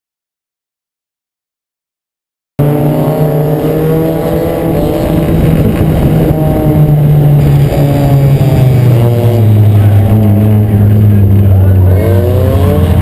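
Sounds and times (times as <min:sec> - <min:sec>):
race car engine revving: 0:02.6 - 0:13.0.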